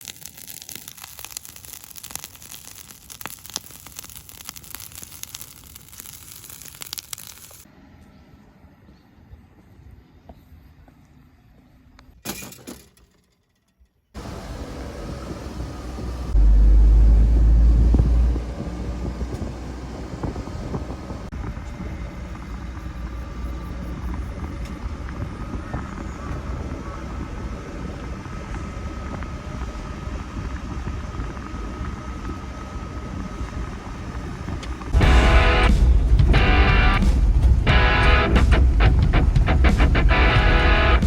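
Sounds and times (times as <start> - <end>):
weeds burning crackle: 0.0 - 7.7
loud low rumble: 14.2 - 32.3, 34.8 - 41.0.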